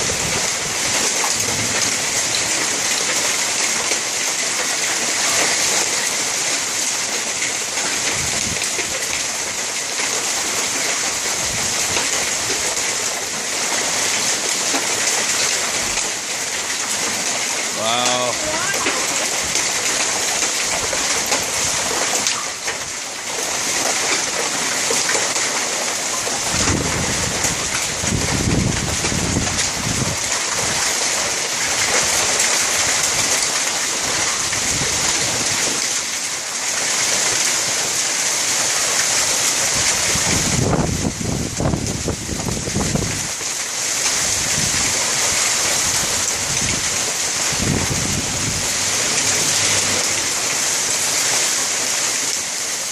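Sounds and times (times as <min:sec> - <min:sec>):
wind gusts on microphone: 0:00.0 - 0:02.4, 0:08.0 - 0:09.2, 0:26.4 - 0:30.9, 0:39.6 - 0:43.4, 0:44.1 - 0:50.6
hail and heavy rain pelting: 0:00.0 - 0:52.9.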